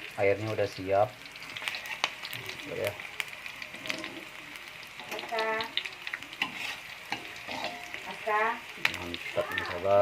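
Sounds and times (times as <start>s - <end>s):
spice paste sizzling in oil: 0.0s - 10.0s.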